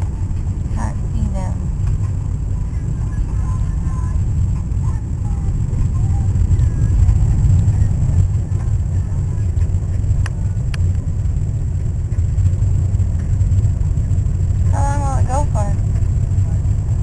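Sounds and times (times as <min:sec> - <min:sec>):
car driving rumble inside cabin: 0:00.0 - 0:17.0.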